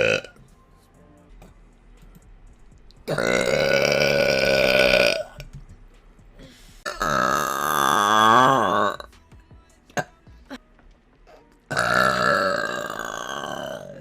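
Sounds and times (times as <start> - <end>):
woman burping: 0.0 - 0.3, 3.1 - 5.4, 6.9 - 9.1, 11.3 - 14.0.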